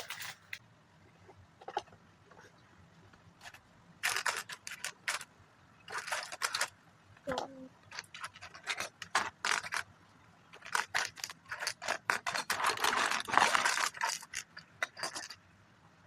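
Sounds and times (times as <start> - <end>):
packaging scraping and crackling: 3.4 - 5.3, 5.9 - 6.7, 7.9 - 9.9, 10.6 - 15.4.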